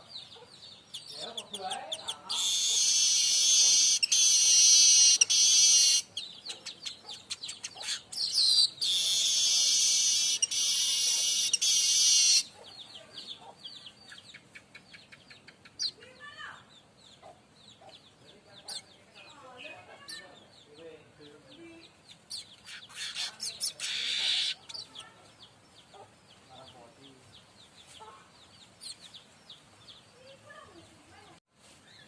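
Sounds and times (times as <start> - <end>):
bird buzzy reels: 2.3 - 6.1, 8.8 - 12.5.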